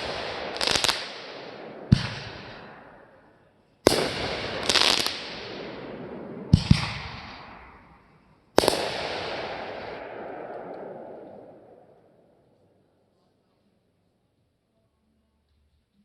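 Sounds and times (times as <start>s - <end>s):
fireworks hissing blasts: 0.0s - 2.8s, 3.9s - 5.7s
fireworks crackling: 0.0s - 12.1s
fireworks sharp bangs: 0.0s - 12.4s.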